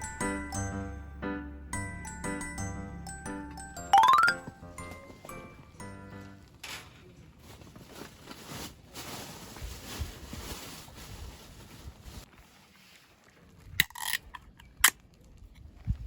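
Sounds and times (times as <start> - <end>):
rustling and handling noise: 4.8 - 13.3.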